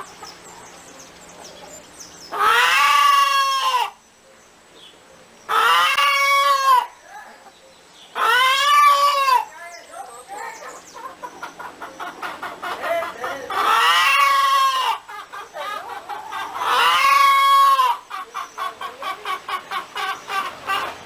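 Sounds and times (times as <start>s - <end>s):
chickens clucking: 0.0s - 4.0s, 5.4s - 21.0s
chicken long drawn-out call: 2.3s - 4.0s, 5.5s - 7.0s, 8.2s - 9.5s, 11.0s - 21.0s.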